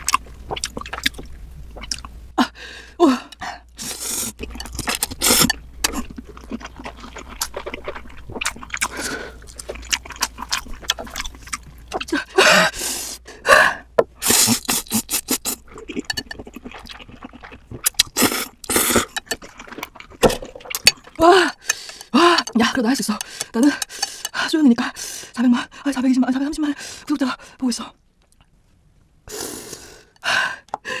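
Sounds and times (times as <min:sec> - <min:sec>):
slurping and chewing noodles: 0:00.0 - 0:02.1, 0:03.4 - 0:13.2, 0:14.2 - 0:24.4.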